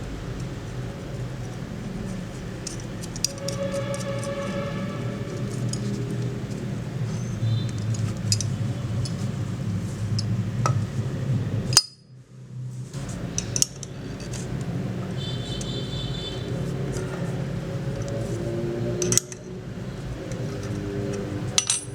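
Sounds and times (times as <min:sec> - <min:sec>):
small metal parts clinking: 0:07.7 - 0:09.3, 0:13.4 - 0:14.4, 0:20.4 - 0:21.9.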